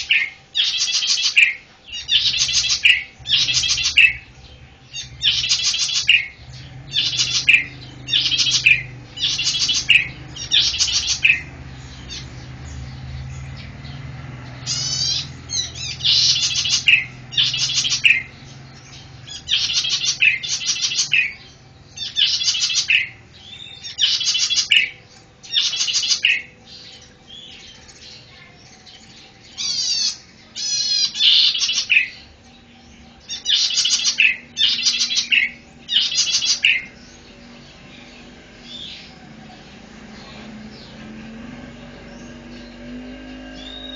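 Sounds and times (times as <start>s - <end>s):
bird trilling: 0.0s - 43.9s.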